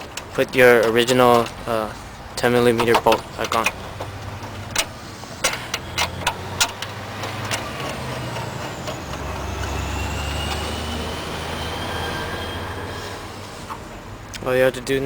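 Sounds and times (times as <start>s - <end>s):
vehicle passing by rumbling: 0.0s - 15.0s
faint rising whine: 5.0s - 14.3s.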